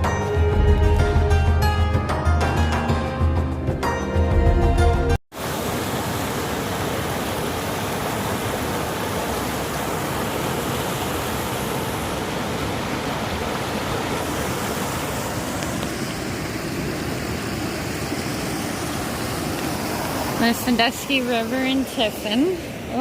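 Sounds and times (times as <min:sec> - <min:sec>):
river water rushing: 0:05.4 - 0:23.0.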